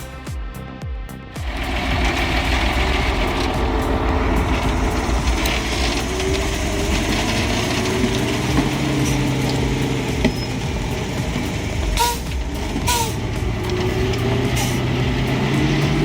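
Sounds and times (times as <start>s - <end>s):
truck engine running: 0.0s - 16.0s
short squeak: 12.0s - 13.3s.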